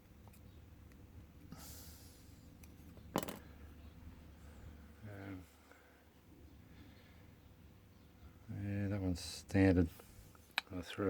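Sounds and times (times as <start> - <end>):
padlock parts handling: 2.6 - 3.4.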